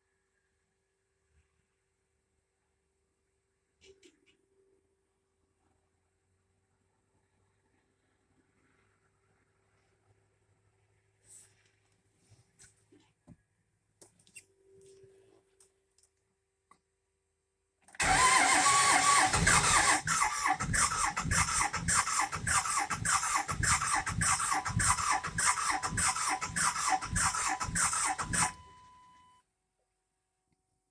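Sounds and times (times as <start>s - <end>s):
diesel engine cranking: 18.0s - 29.2s
starter whine: 18.0s - 29.4s.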